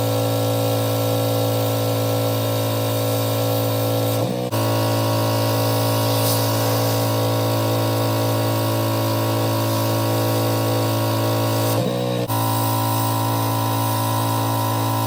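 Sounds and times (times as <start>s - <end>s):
pressure washer motor humming: 0.0s - 15.0s
water spray hissing: 5.6s - 7.4s.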